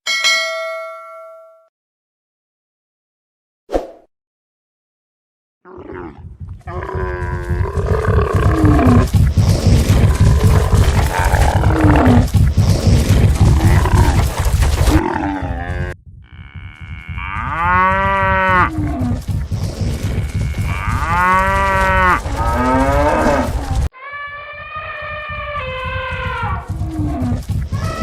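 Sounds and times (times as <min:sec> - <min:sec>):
cattle mooing: 0:05.7 - 0:12.3, 0:13.4 - 0:19.2, 0:19.8 - 0:28.0
animals grunting: 0:05.7 - 0:23.9, 0:24.6 - 0:28.0
steady animal call: 0:05.7 - 0:28.0
galloping hooves rumble: 0:05.8 - 0:23.9, 0:24.8 - 0:28.0.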